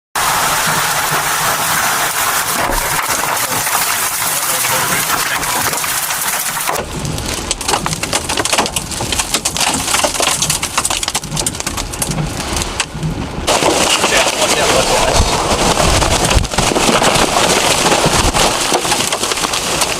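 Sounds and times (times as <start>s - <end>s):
heavy rain and wind: 0.2s - 19.9s
low rumble: 0.2s - 19.9s
sharp crackles: 0.2s - 19.9s.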